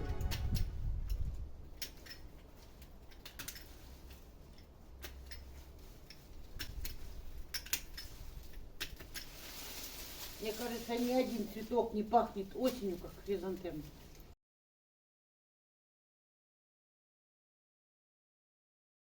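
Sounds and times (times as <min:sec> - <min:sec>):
secateurs snipping stems: 0:04.9 - 0:11.9.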